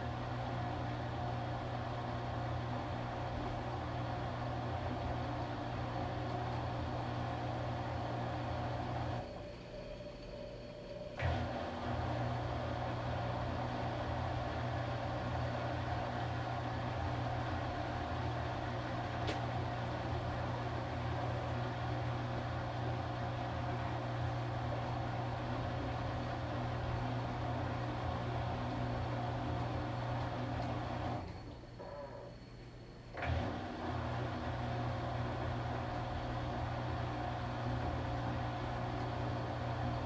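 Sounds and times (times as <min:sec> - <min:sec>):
washing machine motor humming: 0:02.6 - 0:22.6, 0:24.0 - 0:31.9, 0:33.1 - 0:40.0
high steady whine: 0:02.8 - 0:16.1, 0:24.7 - 0:32.4, 0:35.7 - 0:40.0.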